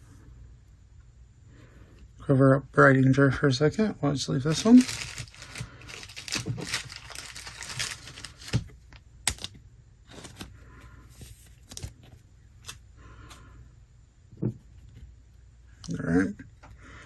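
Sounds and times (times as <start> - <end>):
card pack wrapper crinkling: 4.4 - 10.5, 11.5 - 12.8.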